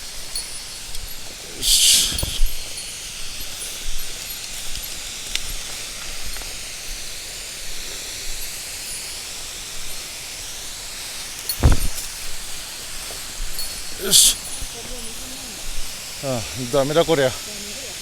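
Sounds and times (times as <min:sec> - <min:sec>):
mountain stream rushing: 0:00.0 - 0:18.0
low thump: 0:11.6 - 0:12.0.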